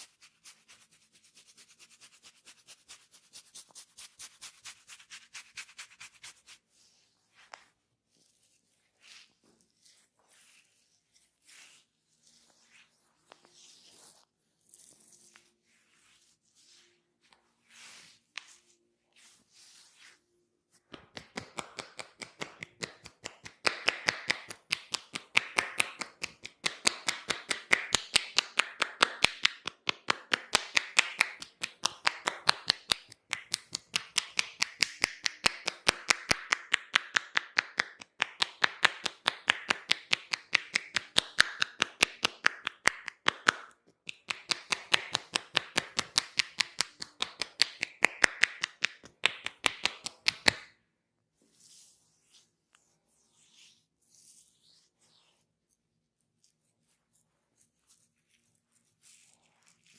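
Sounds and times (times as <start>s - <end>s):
hands rubbing on skin: 0.0s - 50.8s, 51.4s - 55.5s, 56.4s - 59.9s
hands slapping skin: 20.9s - 50.8s.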